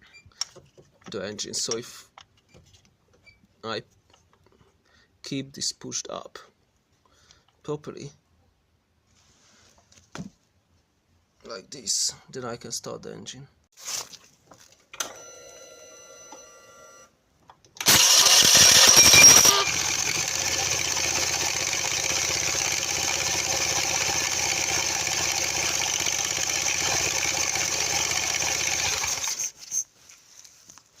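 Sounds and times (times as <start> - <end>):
electric starter cranking: 17.8 - 29.6
scooter engine idling: 19.5 - 29.3.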